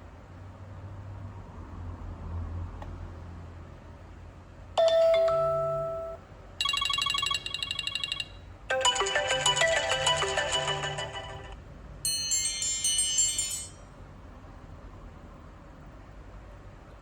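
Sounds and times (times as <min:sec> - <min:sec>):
melodic ringtone: 0:04.8 - 0:13.7
phone chime: 0:04.8 - 0:13.8.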